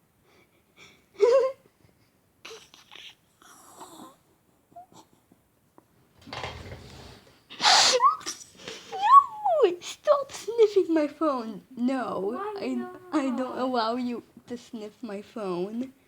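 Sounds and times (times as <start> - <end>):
long sniff: 7.6 - 8.0.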